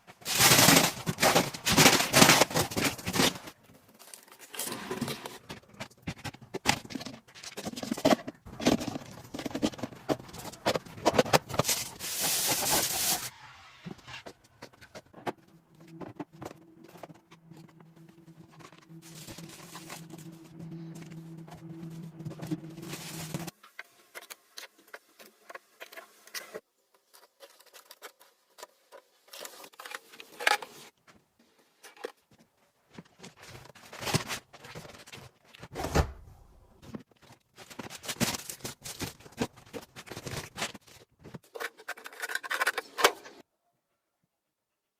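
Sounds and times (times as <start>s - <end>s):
plastic packaging rustling: 0.1s - 13.3s, 18.3s - 24.2s, 36.8s - 42.6s.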